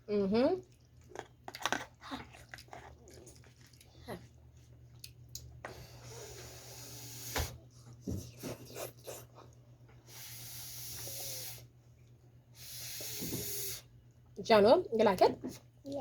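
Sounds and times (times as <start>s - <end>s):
eating noises: 0.6s - 5.5s
hissing breath puffs: 5.7s - 7.6s, 10.0s - 11.7s, 12.5s - 14.0s.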